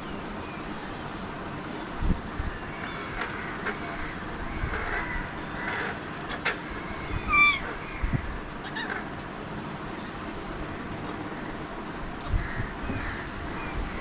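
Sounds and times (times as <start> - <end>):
faint parakeet calls: 2.8 - 9.1
parakeet squawking: 3.4 - 9.1.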